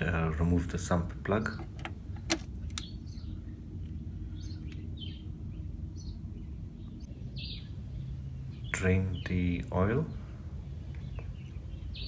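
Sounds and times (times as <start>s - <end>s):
low background rumble: 0.0s - 12.0s
sharp clicks: 1.6s - 2.9s.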